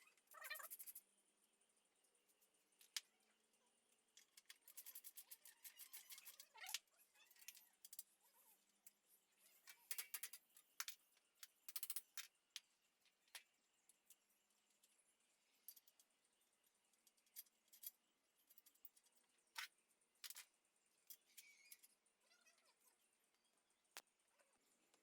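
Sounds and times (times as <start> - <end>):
light clicks and clinks of tools: 9.6 - 12.3.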